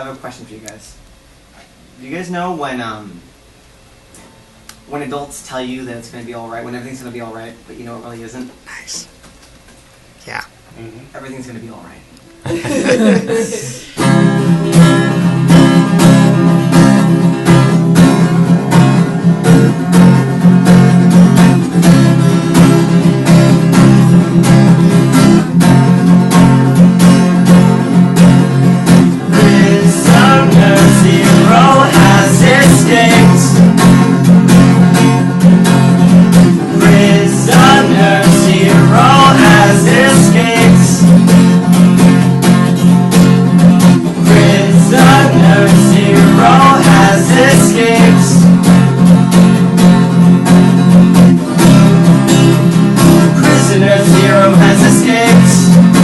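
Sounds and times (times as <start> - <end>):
acoustic guitar strumming: 12.4 - 56.0
person singing: 29.3 - 33.7, 36.7 - 41.1, 44.3 - 48.6, 53.4 - 55.8.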